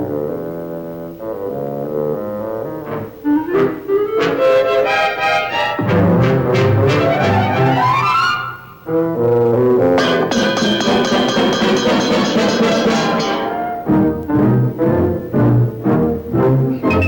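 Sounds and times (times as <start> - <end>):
orchestral cartoon music with brass: 0.0 - 17.0.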